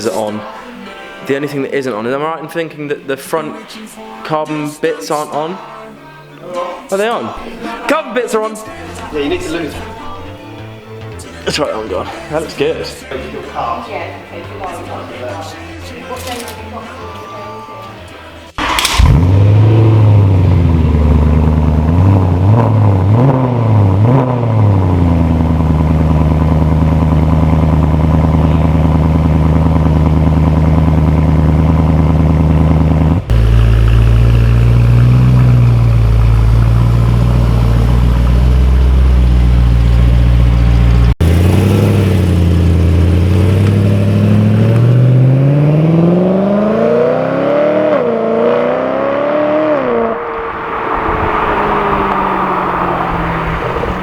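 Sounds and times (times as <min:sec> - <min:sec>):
car engine revving and idling: 0:18.6 - 0:54.0.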